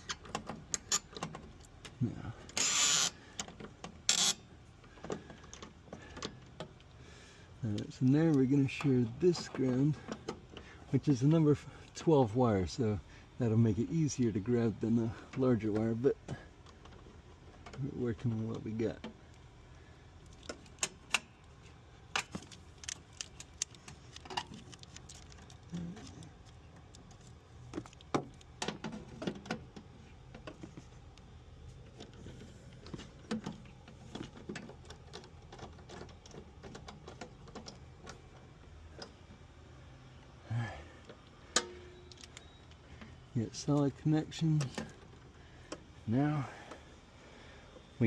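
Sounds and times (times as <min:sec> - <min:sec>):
screwdriver and wire clicking on metal: 0:00.0 - 0:04.4.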